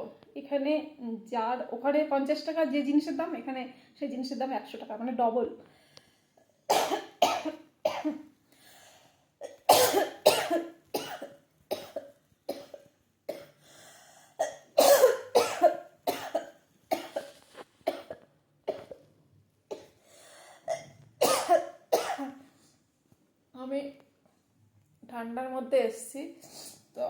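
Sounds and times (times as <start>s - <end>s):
woman coughing hard: 6.7s - 8.2s, 9.4s - 13.6s, 14.4s - 19.0s, 20.7s - 22.4s.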